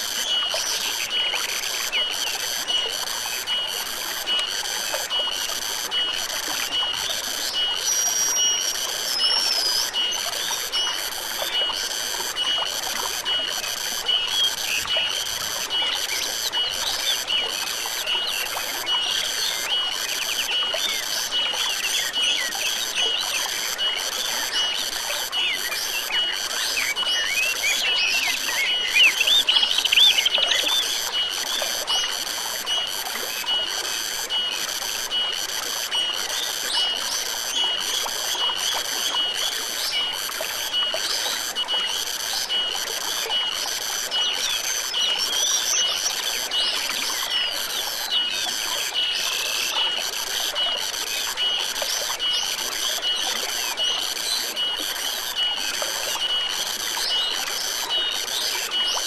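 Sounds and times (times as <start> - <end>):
stream water flowing: 0.0 - 59.0.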